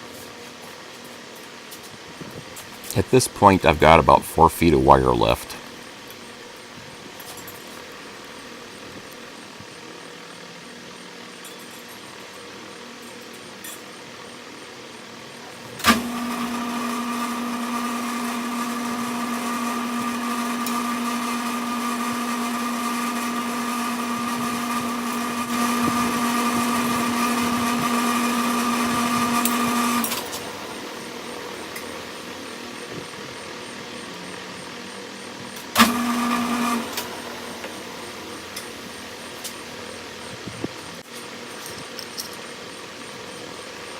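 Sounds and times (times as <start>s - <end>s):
lathe motor hum: 15.8s - 32.8s, 35.8s - 39.3s.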